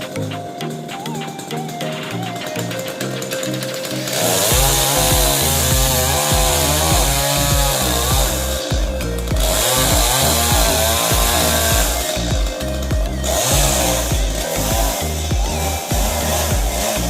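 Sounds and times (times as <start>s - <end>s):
background music with steady beat: 0.0s - 17.0s
chainsaw buzzing: 3.5s - 17.0s.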